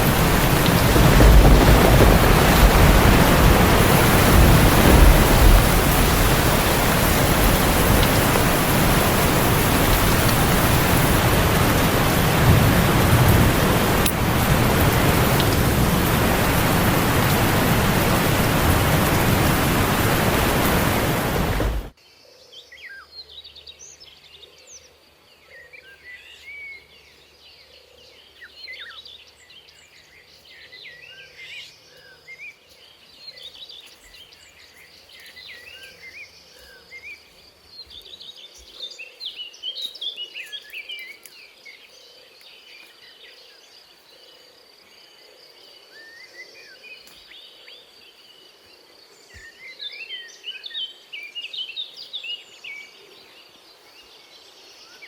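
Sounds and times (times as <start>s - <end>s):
high insect drone: 0.0s - 21.7s
birds chirping: 0.0s - 22.0s
heavy rain hissing: 0.0s - 22.0s.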